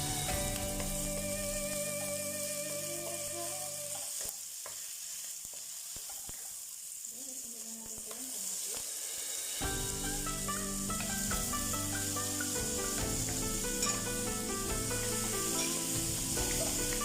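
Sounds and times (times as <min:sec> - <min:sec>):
background music: 0:00.0 - 0:04.0, 0:09.6 - 0:17.0
food sizzling in a frying pan: 0:00.0 - 0:17.0.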